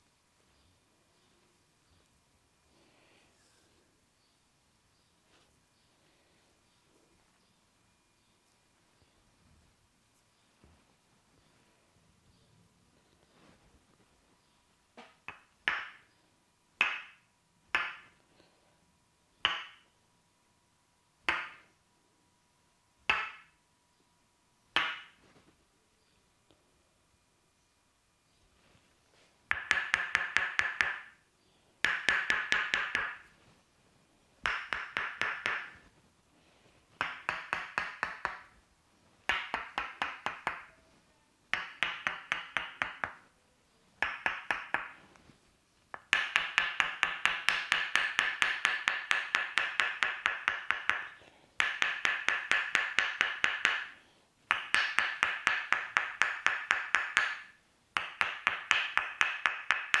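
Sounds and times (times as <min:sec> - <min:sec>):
wooden mallet tapping wooden wedge: 0:15.0 - 0:16.1, 0:16.8 - 0:18.2, 0:19.4 - 0:19.9, 0:21.2 - 0:21.7, 0:23.1 - 0:23.6, 0:24.7 - 0:25.2, 0:29.5 - 0:31.2, 0:31.8 - 0:33.3, 0:34.4 - 0:35.9, 0:37.0 - 0:38.6, 0:39.2 - 0:40.8, 0:41.5 - 0:43.2, 0:44.0 - 0:45.0, 0:45.9 - 1:00.0.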